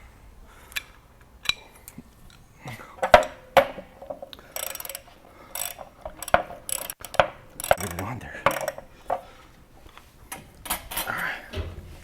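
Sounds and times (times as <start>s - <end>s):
metal tools clinking: 0.8s - 12.0s
ratchet clicking: 3.0s - 11.6s.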